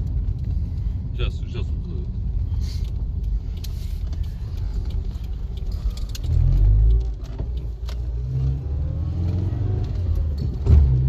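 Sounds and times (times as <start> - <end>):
car engine revving: 3.8 - 11.0.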